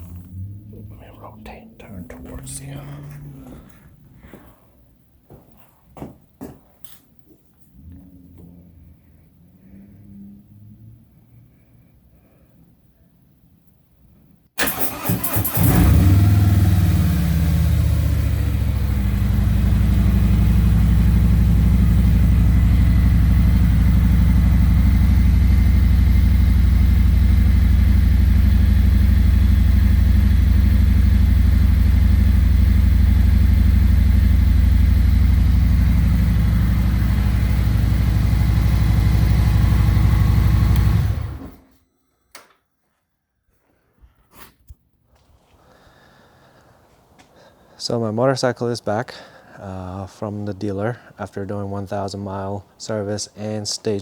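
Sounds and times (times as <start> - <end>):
motorcycle engine starting and idling: 14.6 - 41.8.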